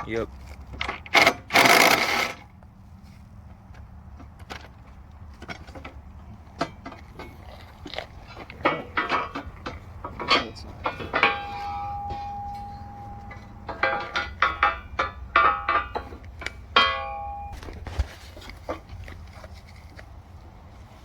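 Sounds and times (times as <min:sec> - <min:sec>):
metal parts clanking: 0:06.6 - 0:19.9.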